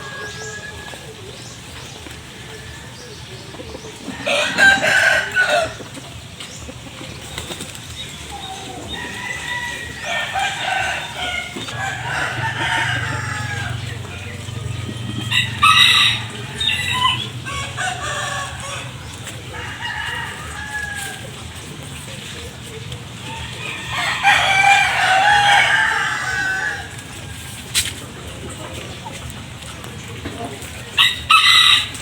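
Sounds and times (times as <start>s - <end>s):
chickens squawking loudly: 0.0s - 29.3s, 30.5s - 32.0s
chickens clucking: 0.0s - 32.0s
wings flapping: 6.4s - 8.8s.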